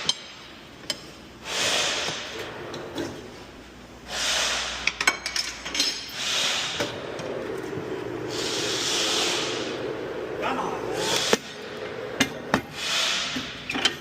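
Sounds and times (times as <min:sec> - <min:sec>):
air hissing: 0:01.4 - 0:02.4, 0:04.0 - 0:05.0, 0:06.0 - 0:07.2, 0:08.2 - 0:10.1, 0:10.9 - 0:11.8, 0:12.5 - 0:13.8.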